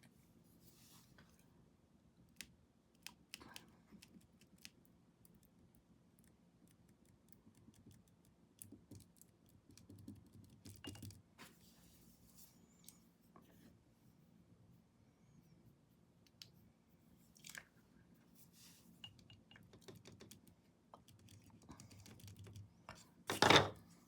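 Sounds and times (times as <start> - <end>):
brush on canvas: 0.5 - 1.2, 18.2 - 19.0.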